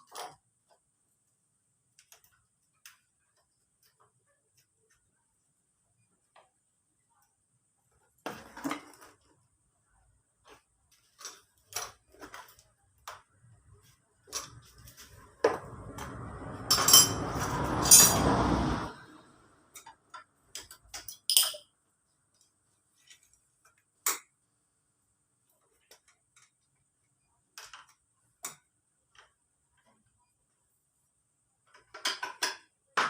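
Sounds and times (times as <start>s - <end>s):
rattling and scraping: 14.2s - 18.9s
metal tools clinking: 16.7s - 18.3s, 20.6s - 21.7s.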